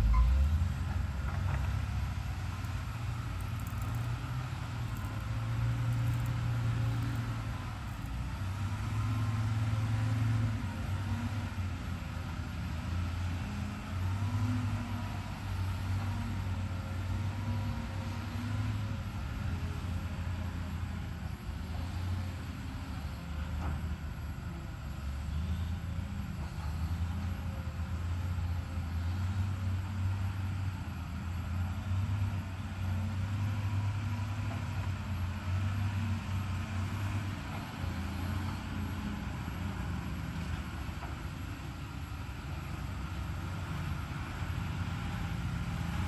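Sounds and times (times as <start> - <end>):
faint wavering whine: 0.0 - 1.4
excavator diesel engine running: 0.0 - 46.0.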